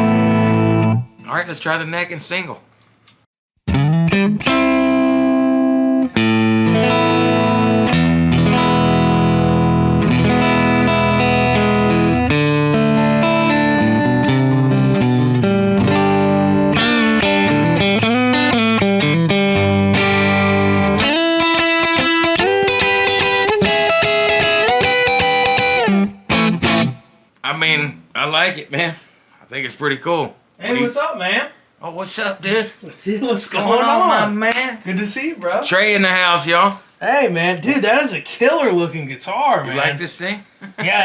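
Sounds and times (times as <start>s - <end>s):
electric guitar chords: 0.0s - 1.2s, 3.7s - 27.1s
bent guitar notes: 3.7s - 28.2s.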